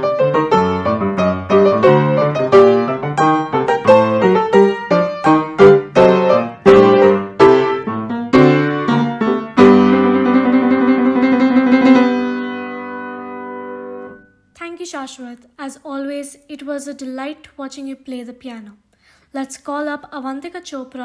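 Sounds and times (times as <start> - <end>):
solo piano chords: 0.0 - 14.4.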